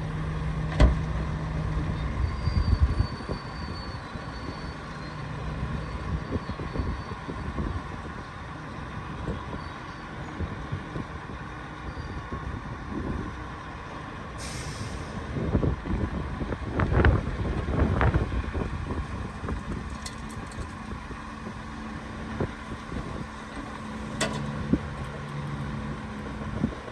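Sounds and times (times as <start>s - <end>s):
bulldozer diesel engine running: 0.0s - 26.9s
knocks and clanks: 23.6s - 25.1s.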